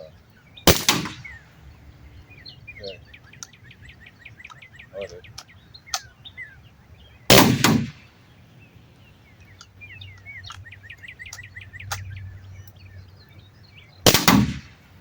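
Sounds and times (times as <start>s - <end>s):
birds chirping: 0.0s - 15.0s
air shotgun shots: 0.7s - 1.3s, 7.3s - 8.0s, 14.1s - 14.8s.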